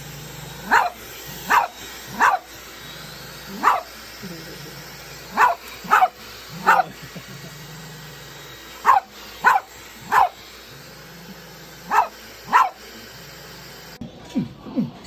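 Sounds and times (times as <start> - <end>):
dog barking: 0.6 - 2.6, 3.5 - 4.0, 5.2 - 7.0, 8.8 - 10.5, 11.8 - 12.9.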